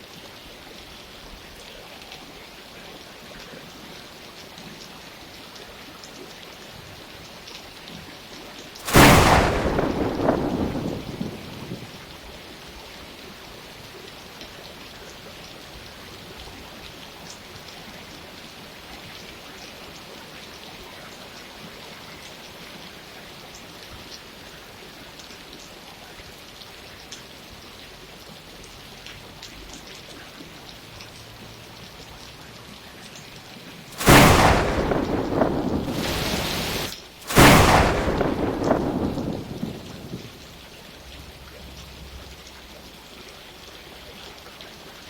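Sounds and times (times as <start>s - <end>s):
rain drops ticking: 0.0s - 45.0s
steady rain: 0.0s - 45.0s
thunder clap and rumble: 8.8s - 12.2s, 34.0s - 40.6s.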